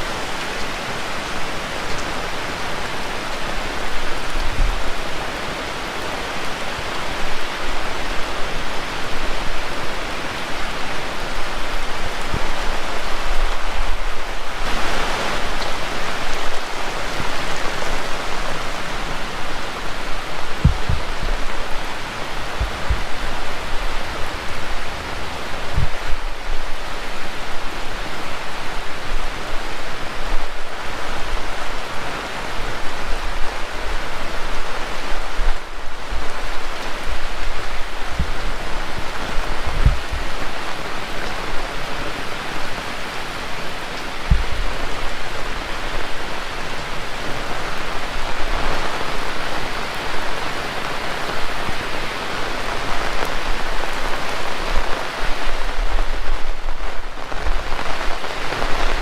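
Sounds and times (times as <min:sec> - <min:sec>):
heavy rain falling: 0:00.0 - 0:59.0
low thumps: 0:20.6 - 0:21.2.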